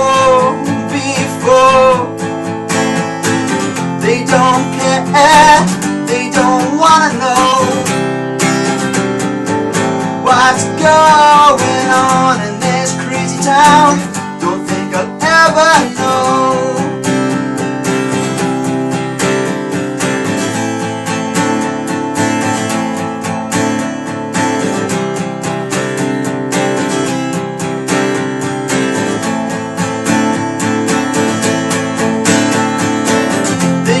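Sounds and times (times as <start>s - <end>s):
acoustic guitar strumming: 0.0s - 34.0s.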